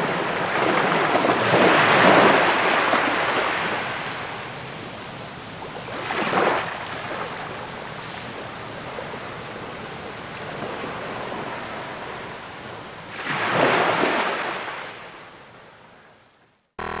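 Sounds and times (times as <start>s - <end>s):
hiss of surf: 0.0s - 16.0s.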